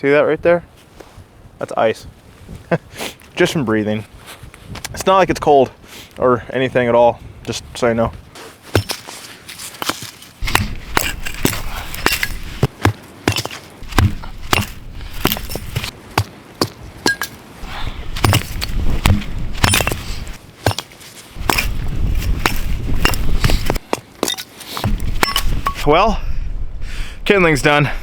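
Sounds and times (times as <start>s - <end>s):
firewood splitting knocks and cracks: 8.7s - 17.4s, 18.1s - 25.8s.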